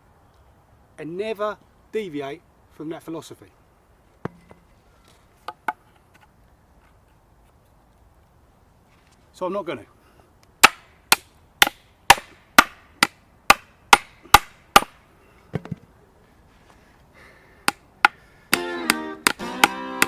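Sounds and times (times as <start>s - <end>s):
plucked-string music: 18.5s - 20.0s.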